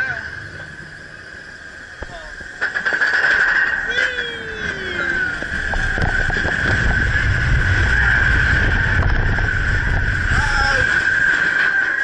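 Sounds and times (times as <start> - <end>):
steady high hum: 0.0 - 12.0
truck rumbling on rough track: 4.9 - 12.0.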